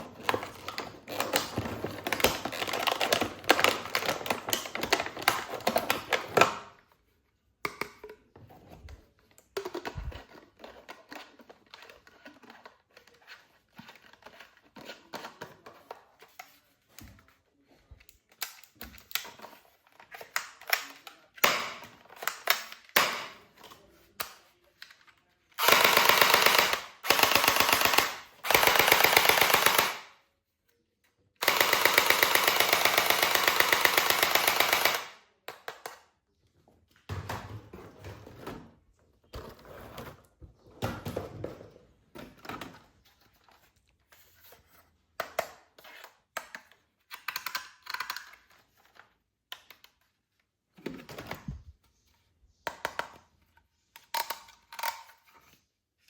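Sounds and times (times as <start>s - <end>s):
toy gun clicking: 25.6s - 30.1s, 31.4s - 35.2s
toy gun rapid fire bursts: 25.6s - 30.1s, 31.4s - 35.2s.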